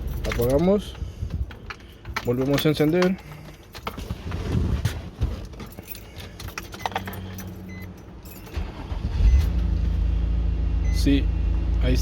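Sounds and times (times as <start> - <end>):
keys jingling in ignition: 0.0 - 4.3, 4.9 - 10.0
car engine cranking and running: 5.4 - 12.0.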